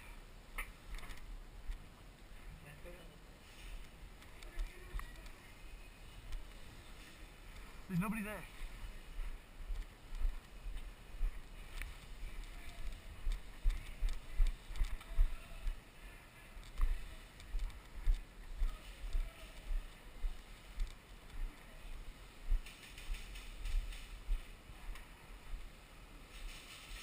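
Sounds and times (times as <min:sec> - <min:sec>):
footsteps with gear jostling: 0:06.1 - 0:15.8, 0:16.6 - 0:25.7.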